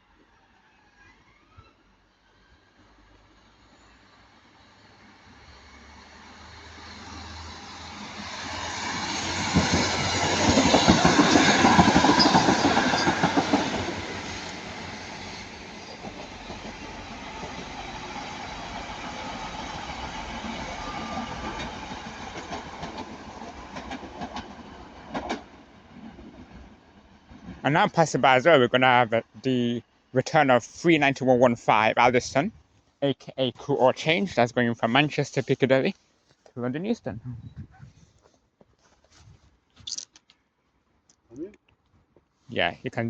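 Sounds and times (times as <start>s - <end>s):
train wheels clattering over rail joints: 9.1s - 14.7s, 21.0s - 26.6s.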